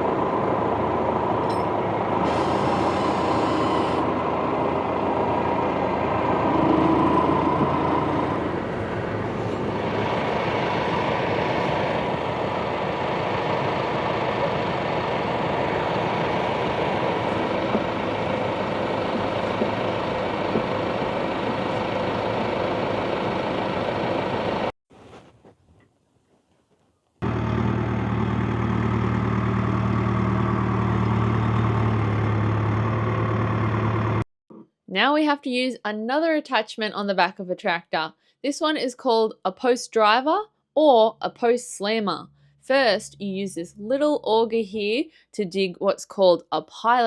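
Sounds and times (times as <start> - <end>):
tractor engine running: 0.0 - 25.2, 27.2 - 34.2.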